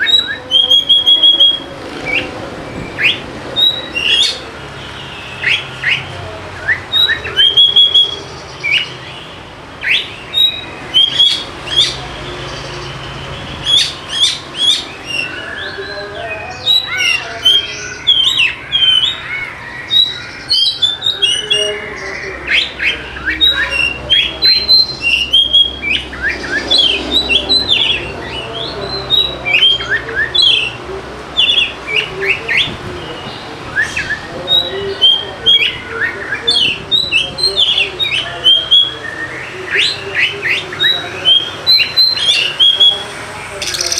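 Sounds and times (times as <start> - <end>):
songbird singing: 0.0 - 43.9.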